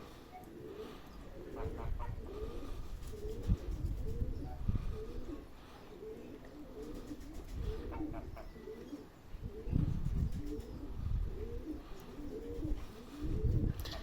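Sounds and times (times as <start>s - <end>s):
pigeons cooing: 0.0s - 14.0s
wind buffeting microphone: 1.4s - 5.5s, 6.9s - 8.5s, 9.3s - 14.0s.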